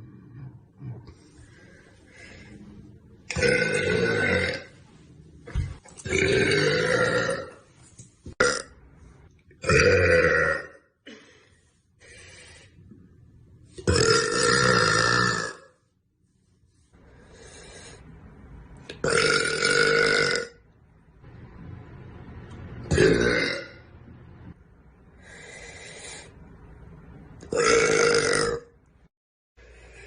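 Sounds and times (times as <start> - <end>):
woman burping: 3.3 - 4.7, 13.8 - 15.7, 22.9 - 23.8, 27.5 - 28.7.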